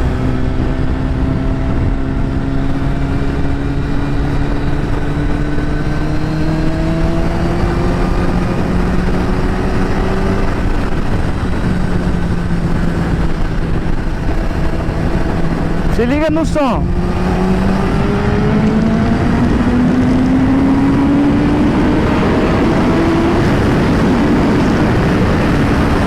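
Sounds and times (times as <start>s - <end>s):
motorcycle engine accelerating: 0.0s - 26.0s
steady noisy rush: 9.8s - 20.0s, 20.6s - 26.0s.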